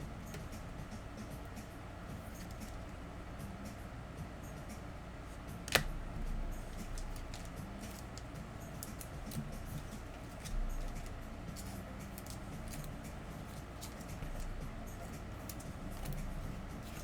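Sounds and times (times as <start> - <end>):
low steady hum: 0.0 - 17.0
trading cards clicking and rustling: 2.2 - 3.0, 5.7 - 17.0.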